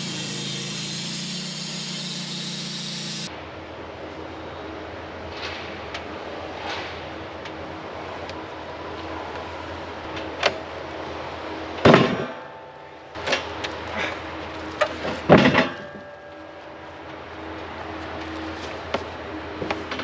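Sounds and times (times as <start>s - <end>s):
sawmill humming: 0.0s - 5.2s, 6.0s - 20.0s
loud clanking impacts: 11.8s - 13.5s, 14.8s - 16.4s.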